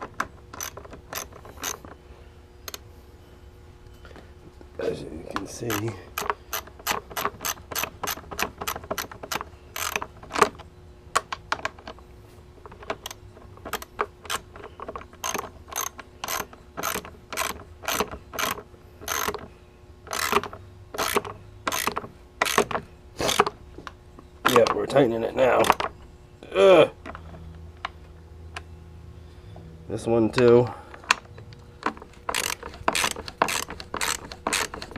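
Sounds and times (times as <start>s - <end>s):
socket ratchet clicking: 0.5s - 1.8s, 5.7s - 10.6s, 12.8s - 19.5s, 20.1s - 23.5s, 31.8s - 34.9s.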